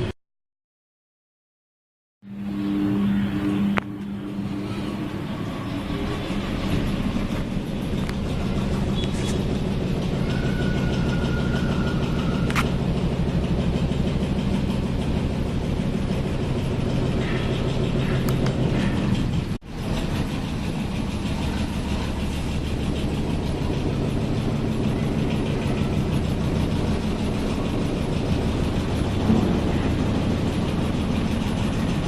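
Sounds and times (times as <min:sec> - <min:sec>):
ceiling fan rattling and humming: 0:02.3 - 0:32.0
sharp clicks: 0:12.4 - 0:12.8.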